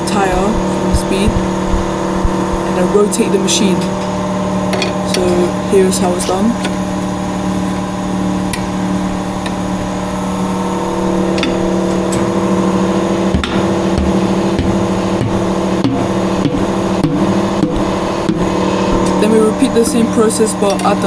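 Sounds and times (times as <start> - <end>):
turntable motor humming: 0.0 - 21.0
sharp knocks and clicks: 11.3 - 12.5, 13.3 - 19.2.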